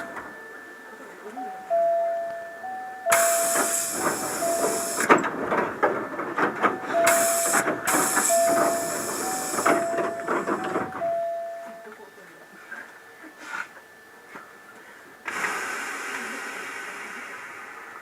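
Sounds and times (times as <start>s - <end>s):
two-tone warning bell: 0.0s - 15.4s
train hissing and clattering: 3.1s - 11.0s, 15.2s - 18.0s.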